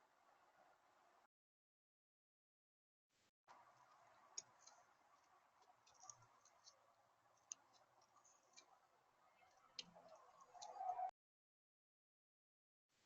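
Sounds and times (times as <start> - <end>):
small birds chipping: 3.5 - 11.1.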